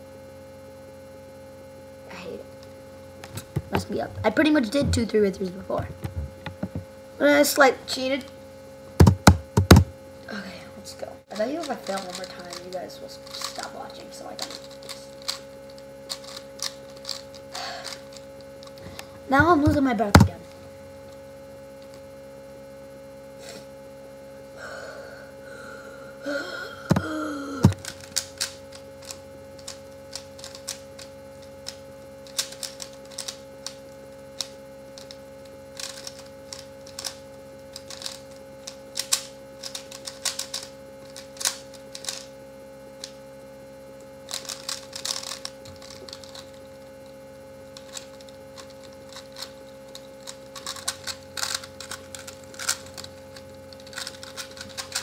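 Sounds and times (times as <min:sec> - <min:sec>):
steady electrical hum: 0:00.0 - 0:55.0
puzzle cube plastic clicking: 0:11.4 - 0:13.6, 0:14.4 - 0:18.8, 0:26.9 - 0:33.8, 0:34.4 - 0:42.3, 0:44.3 - 0:46.6, 0:47.8 - 0:55.0
strained vocal hum: 0:24.5 - 0:28.2.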